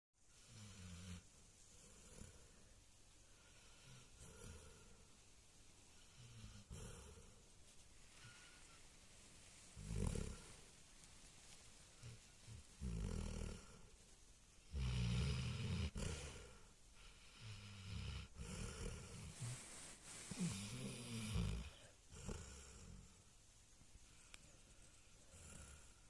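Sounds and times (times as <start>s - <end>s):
puppy snoring: 0.3s - 2.6s, 3.4s - 5.1s, 6.0s - 7.4s, 9.7s - 10.8s, 12.0s - 14.0s, 14.6s - 23.2s, 24.9s - 26.0s.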